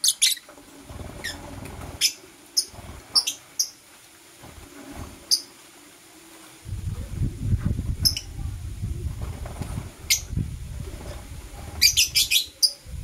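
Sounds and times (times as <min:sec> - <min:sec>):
birds chirping: 0:00.0 - 0:03.8, 0:11.7 - 0:13.0
low rumbling noise: 0:06.6 - 0:13.0.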